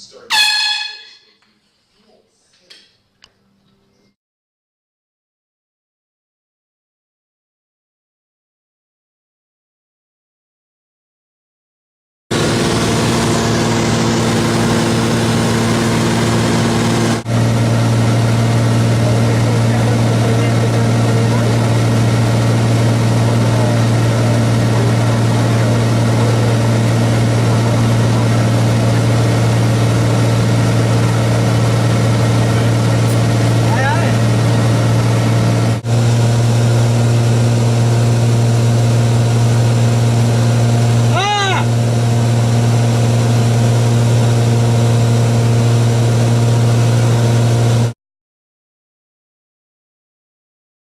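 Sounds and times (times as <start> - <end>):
airplane engine and propeller drone: 12.3 - 47.9.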